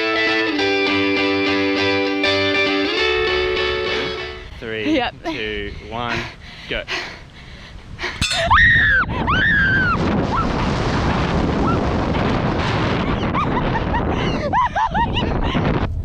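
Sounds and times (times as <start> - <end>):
wind rushing over microphone: 4.4 - 16.0.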